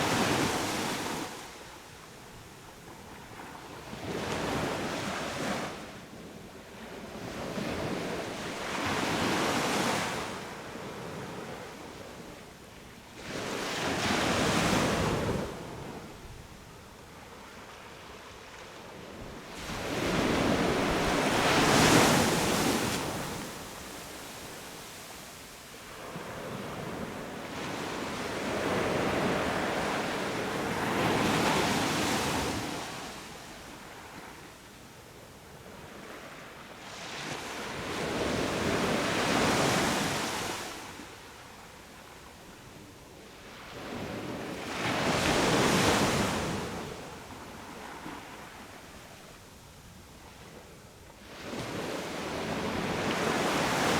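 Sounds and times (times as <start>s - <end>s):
sea waves breaking on beach: 19.4s - 34.1s.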